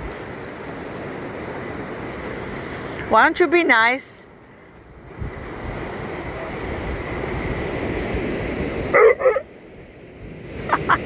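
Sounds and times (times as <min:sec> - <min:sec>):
surf: 0:00.0 - 0:11.0
wind: 0:00.0 - 0:11.0
dog barking: 0:08.9 - 0:09.5.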